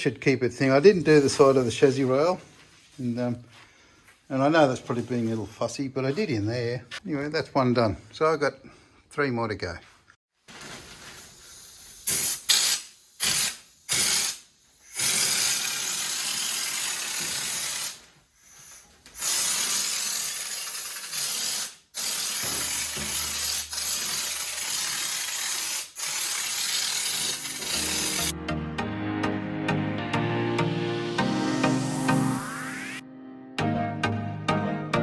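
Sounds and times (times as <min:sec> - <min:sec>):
aerosol can spraying: 0:11.2 - 0:18.0, 0:18.6 - 0:28.3.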